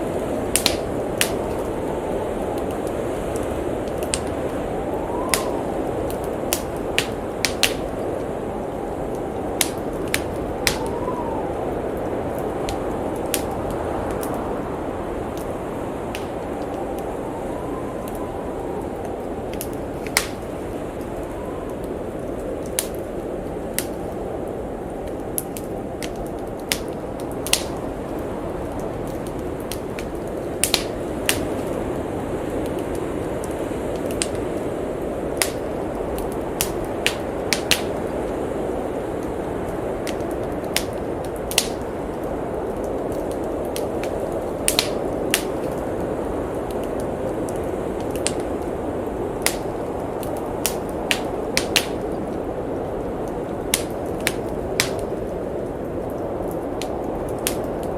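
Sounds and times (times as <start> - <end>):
blizzard wind rushing: 0.0 - 57.9
wood fire crackling and popping: 0.0 - 57.9.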